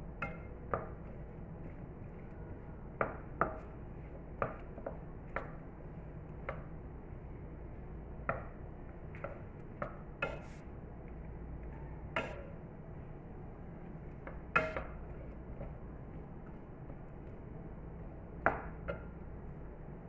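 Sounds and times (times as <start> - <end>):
steady low hum: 0.0 - 20.0
metal utensil clinking on pan: 12.2 - 12.6, 14.6 - 15.0.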